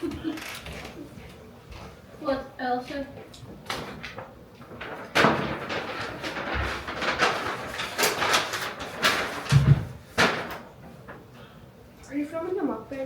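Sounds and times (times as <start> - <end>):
rustling and crackling: 3.2 - 11.3.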